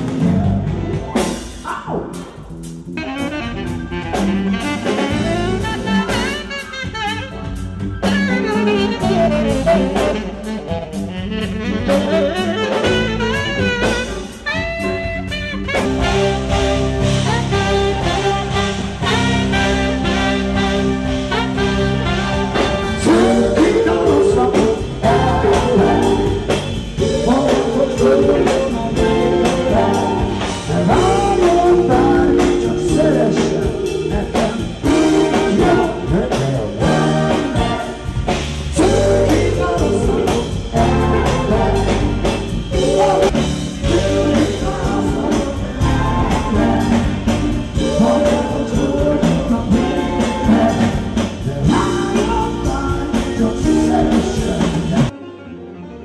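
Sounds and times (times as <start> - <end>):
steady drum beat: 0.0 - 55.1
live band playing: 0.0 - 56.0
person singing: 22.9 - 37.9, 38.8 - 55.2.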